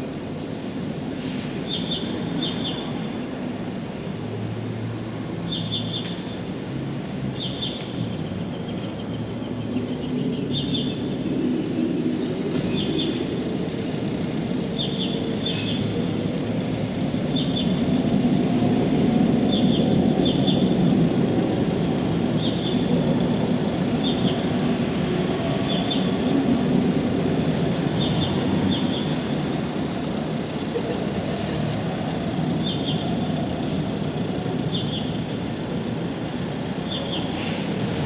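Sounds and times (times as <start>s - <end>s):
bird chirping: 34.4s - 35.2s.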